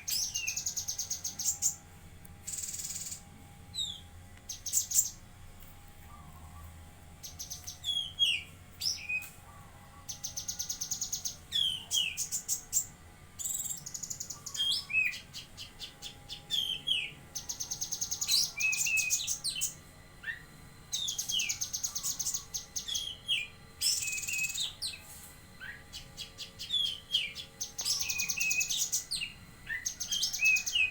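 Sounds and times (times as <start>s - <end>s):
songbird buzzing trills: 0.0s - 30.9s
songbird whistled downward notes: 26.6s - 30.9s.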